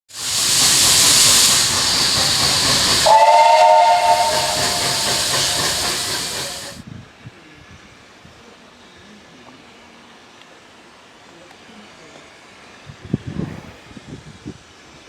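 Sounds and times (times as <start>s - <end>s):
loud steam hiss: 0.1s - 7.0s
steam whistle: 2.2s - 6.8s.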